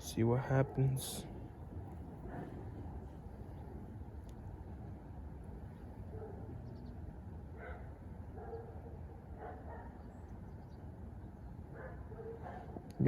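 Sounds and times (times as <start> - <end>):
distant dog barking: 0.4 - 1.2, 2.2 - 2.7, 6.0 - 6.6, 7.6 - 10.0, 11.7 - 13.0.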